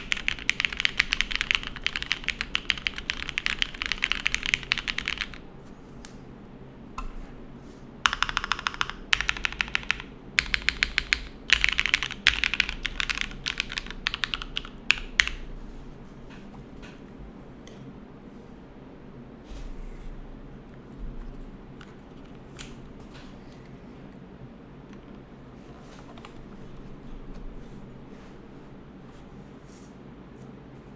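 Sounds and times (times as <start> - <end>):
mechanical keyboard typing: 0.0 - 5.4, 8.0 - 15.5.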